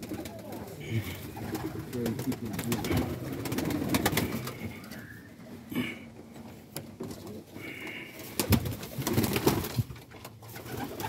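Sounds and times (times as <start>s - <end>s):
pigeons cooing: 0.0s - 6.2s.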